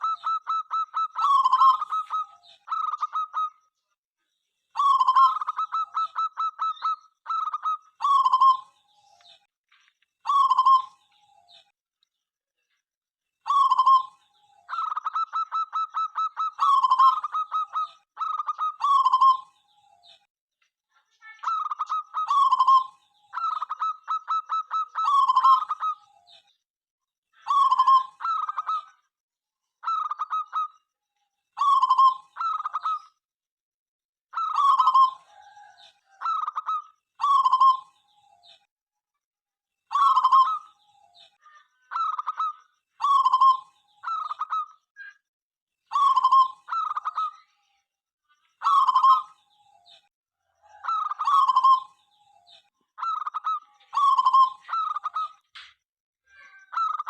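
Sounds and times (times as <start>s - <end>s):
dove cooing: 0.0s - 3.6s, 13.5s - 19.5s, 29.8s - 30.7s, 34.4s - 37.9s, 39.9s - 40.8s, 41.9s - 44.7s, 45.9s - 47.3s, 48.6s - 49.3s, 50.5s - 52.0s, 53.0s - 55.3s.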